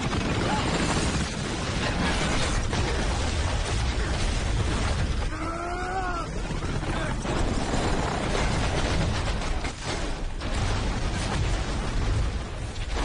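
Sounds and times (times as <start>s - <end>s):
helicopter rotor roar: 5.7s - 8.4s
crashing impacts and bangs: 7.2s - 13.0s.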